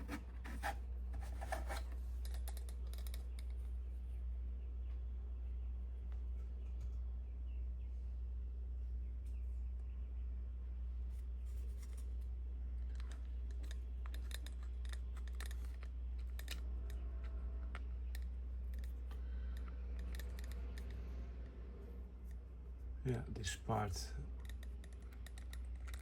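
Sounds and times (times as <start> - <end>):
low hum: 0.0 - 26.0
small metal parts clicking: 12.9 - 21.6, 24.3 - 26.0.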